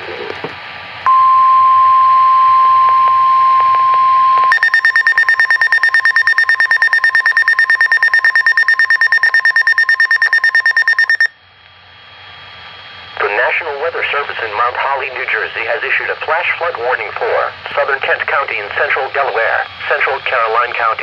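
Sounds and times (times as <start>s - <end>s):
steady high alarm tone: 1.1s - 11.3s
rapid pulsing beeps: 4.4s - 11.3s.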